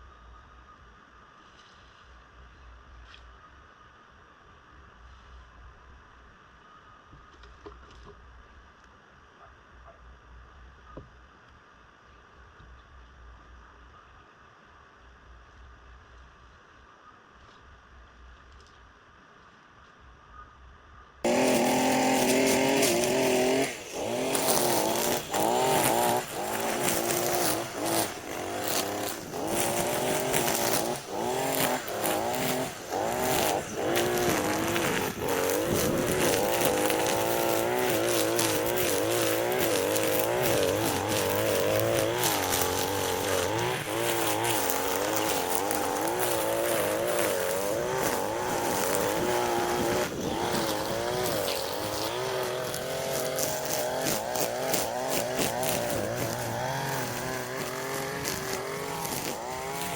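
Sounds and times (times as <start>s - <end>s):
small petrol engine revving: 21.2s - 59.9s.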